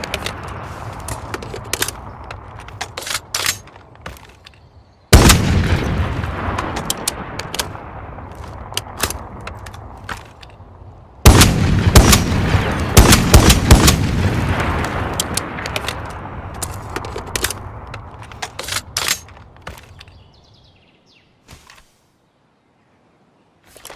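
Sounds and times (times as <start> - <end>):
rifle shots with rolling echo: 5.1 - 8.2, 11.2 - 16.0.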